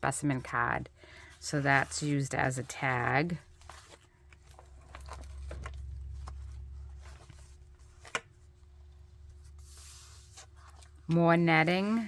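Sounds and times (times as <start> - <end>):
faint steady hum: 0.0 - 12.0
paper pages rustling and turning: 0.2 - 12.0
low rumble: 4.6 - 7.9.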